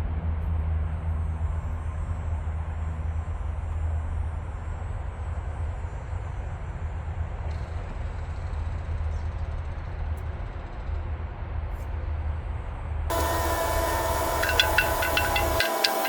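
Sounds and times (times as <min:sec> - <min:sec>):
even hiss: 0:13.1 - 0:16.0
low engine rumble: 0:13.1 - 0:16.0.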